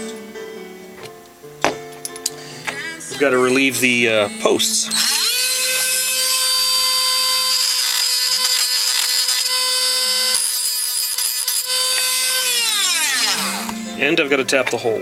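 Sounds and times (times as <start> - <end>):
rotary tool high-pitched whine: 4.4 - 14.0.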